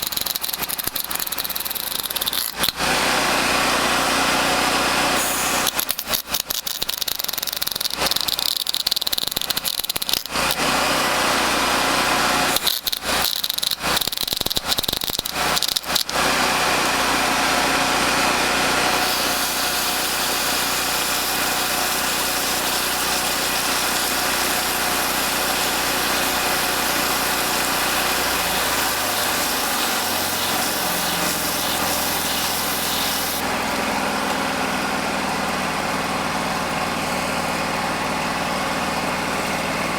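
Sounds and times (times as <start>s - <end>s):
welding arc crackling: 0.0s - 2.9s, 5.2s - 10.6s, 12.5s - 17.0s, 19.0s - 33.4s.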